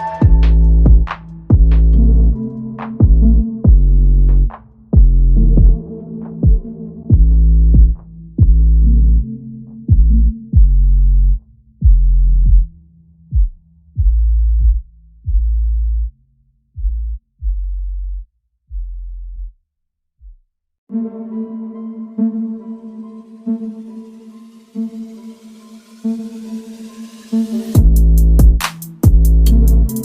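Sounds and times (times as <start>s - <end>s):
held synth note: 0.0s - 1.1s
deep bass hits: 0.2s - 2.4s, 3.0s - 9.3s, 9.9s - 12.7s, 13.3s - 16.1s, 27.8s - 30.0s
soft sustained synth chord: 21.8s - 27.7s.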